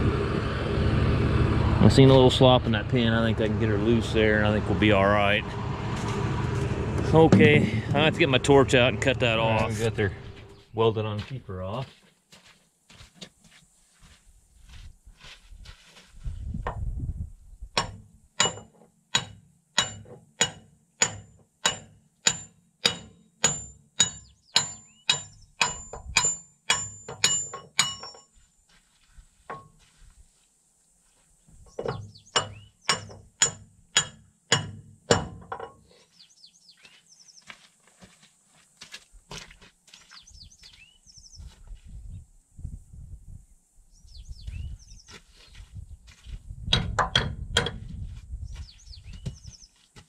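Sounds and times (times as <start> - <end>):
hammer striking steel: 17.8 - 28.3, 32.4 - 35.7.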